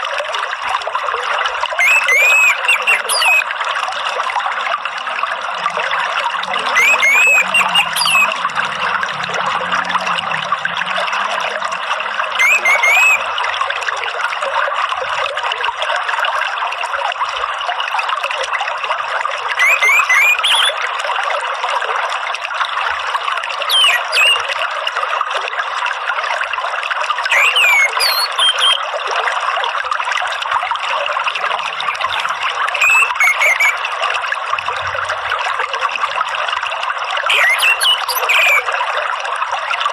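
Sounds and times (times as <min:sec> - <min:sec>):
water trickling and splashing: 0:00.0 - 0:39.9
bird whistling phrases: 0:01.8 - 0:03.5, 0:06.4 - 0:08.9, 0:12.4 - 0:13.3, 0:19.6 - 0:20.8, 0:23.7 - 0:24.5, 0:27.3 - 0:28.8, 0:32.0 - 0:33.8, 0:37.3 - 0:38.7.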